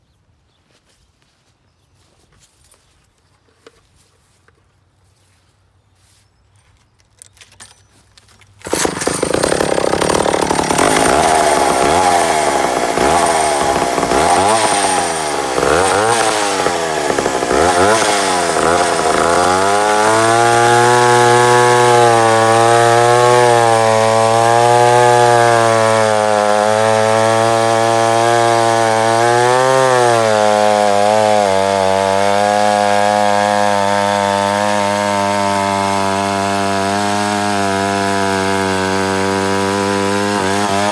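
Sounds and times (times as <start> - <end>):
chainsaw engine revving: 8.6 - 40.9.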